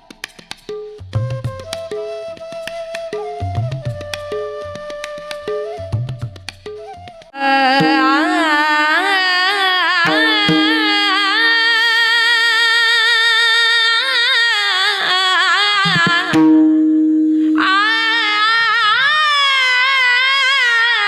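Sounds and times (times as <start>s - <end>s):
hand drum strokes: 0.0s - 8.1s.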